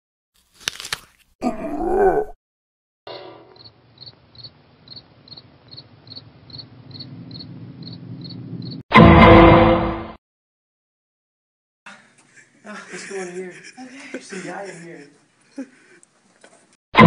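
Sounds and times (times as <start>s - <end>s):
crickets chirping: 3.6s - 8.8s.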